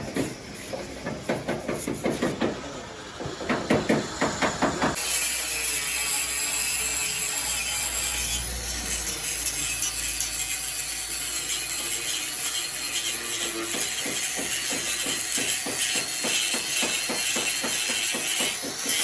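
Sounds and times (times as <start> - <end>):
welding arc crackling and hissing: 7.3 - 19.0.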